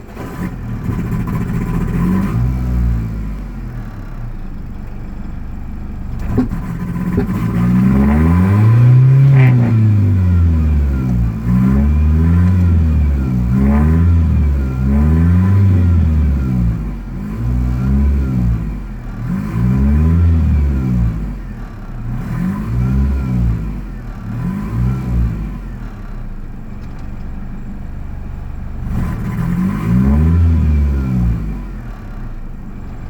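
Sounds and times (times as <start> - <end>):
car engine rough idle: 0.0 - 19.3, 25.2 - 29.7, 30.4 - 33.0.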